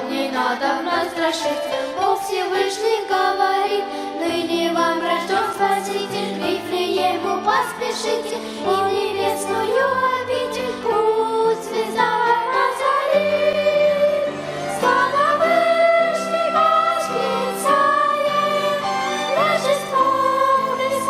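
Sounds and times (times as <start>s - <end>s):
choir singing: 0.0s - 21.0s
violins playing: 12.0s - 21.0s.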